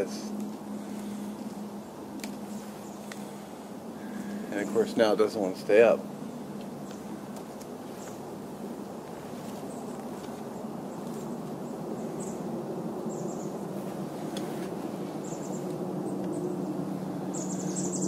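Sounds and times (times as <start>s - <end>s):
distant road traffic rumble: 0.0s - 18.0s
low hum: 0.0s - 18.0s
faint high bird chirps: 17.3s - 18.0s.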